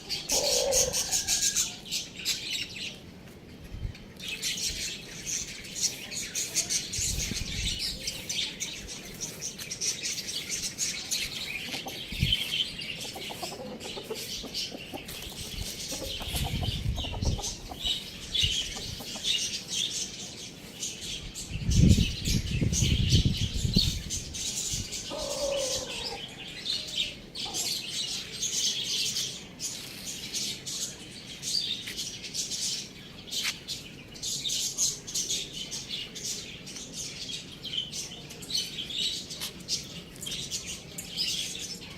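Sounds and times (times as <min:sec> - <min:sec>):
pet birds chirping and chattering: 0:00.0 - 0:41.9.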